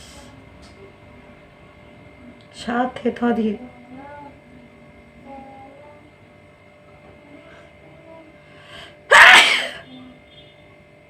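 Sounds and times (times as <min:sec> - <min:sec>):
faint humming: 0:00.0 - 0:11.0
woman sneezing: 0:09.1 - 0:09.9.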